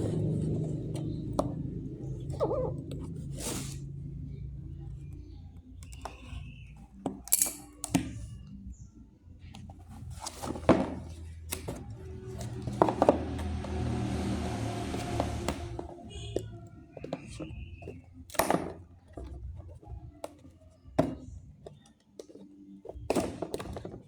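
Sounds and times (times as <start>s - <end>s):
handling clicks and knocks: 5.8s - 8.2s.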